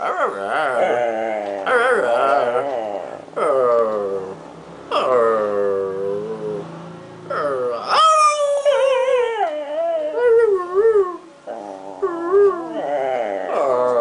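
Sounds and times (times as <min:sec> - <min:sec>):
small dog howling and whining: 0:00.0 - 0:03.7, 0:07.3 - 0:14.0.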